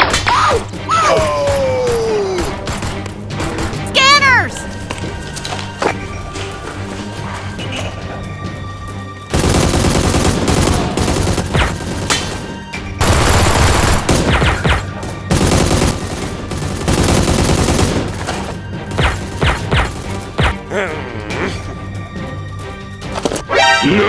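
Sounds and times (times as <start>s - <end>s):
automatic gunfire: 9.3s - 12.4s, 13.0s - 20.3s.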